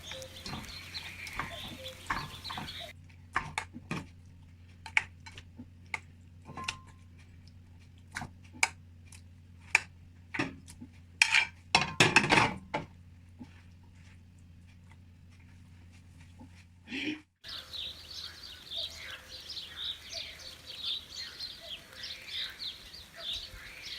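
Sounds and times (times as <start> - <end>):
utensils clinking against cookware: 0.0 - 3.6, 6.5 - 7.0.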